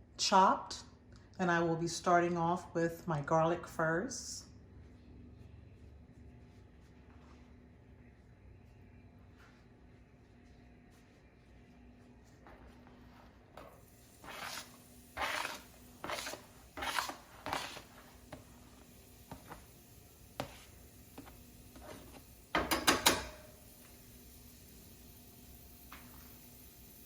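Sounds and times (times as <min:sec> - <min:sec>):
kitchen utensils scraping: 0:13.6 - 0:18.2.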